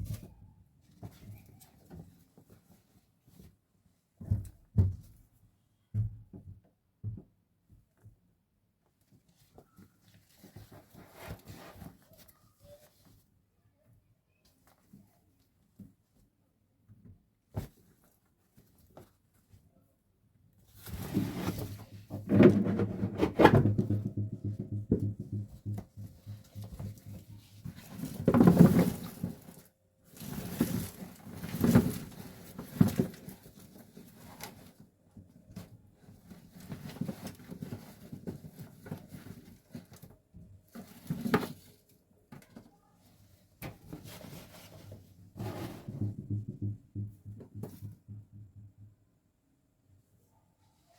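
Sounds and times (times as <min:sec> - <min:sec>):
household items clattering: 0:21.0 - 0:34.7.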